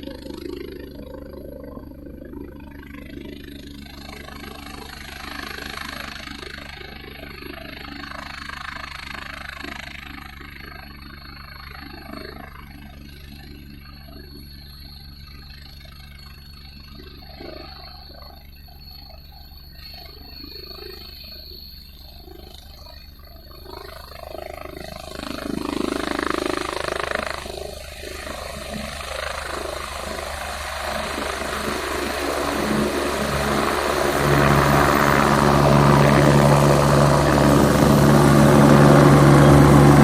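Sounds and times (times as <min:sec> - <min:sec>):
helicopter rotor and engine rumble: 0:00.0 - 0:40.0
high whine: 0:25.2 - 0:40.0.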